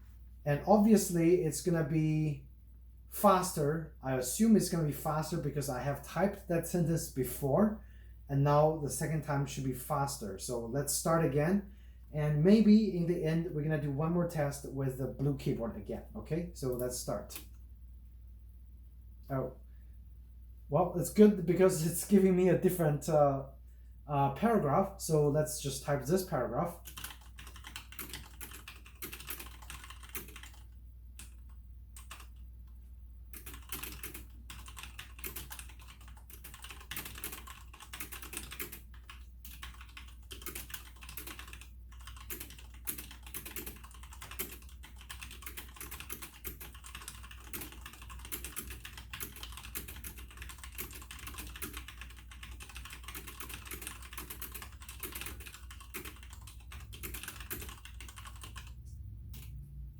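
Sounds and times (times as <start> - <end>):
fast typing on mechanical keyboard: 26.8 - 32.4, 33.3 - 58.8.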